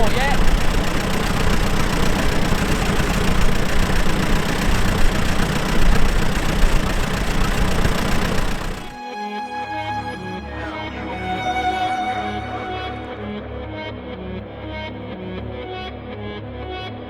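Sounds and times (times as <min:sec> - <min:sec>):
tractor engine running: 0:00.0 - 0:09.0.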